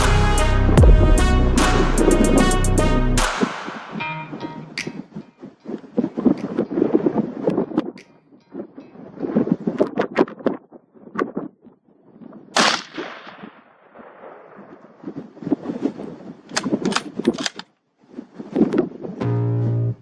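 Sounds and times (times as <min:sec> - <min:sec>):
deep steady bass note: 0:00.0 - 0:03.3
rifle shot with rolling echo: 0:12.6 - 0:14.9.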